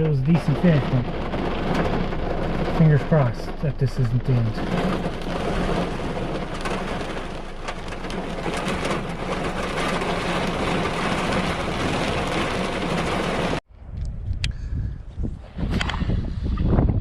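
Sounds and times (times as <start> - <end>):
rain and hail striking: 0.0 - 13.6
wind rumble on microphone: 0.0 - 17.0.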